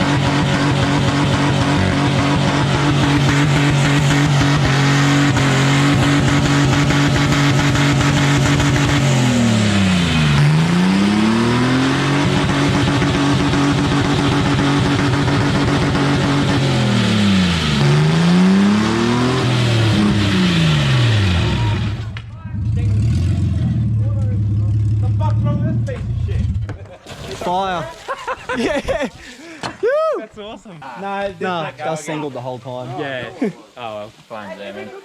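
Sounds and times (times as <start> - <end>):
car engine revving high: 0.0 - 26.7.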